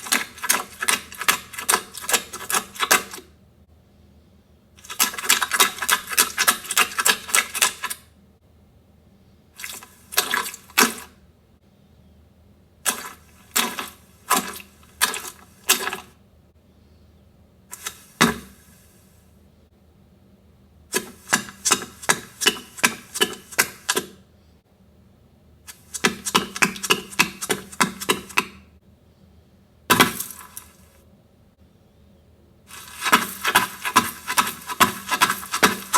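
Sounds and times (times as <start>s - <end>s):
rapid sharp taps: 32.7s - 35.9s.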